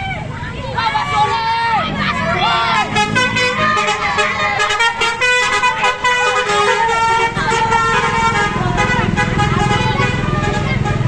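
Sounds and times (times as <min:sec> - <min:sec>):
musical air horn tune: 0:02.9 - 0:11.0.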